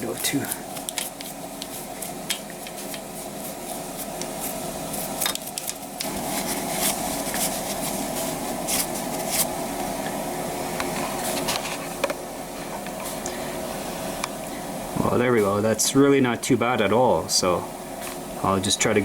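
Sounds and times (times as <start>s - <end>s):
toothbrush scrubbing metal: 0.0s - 9.6s
steady fan-like hum: 0.0s - 19.0s.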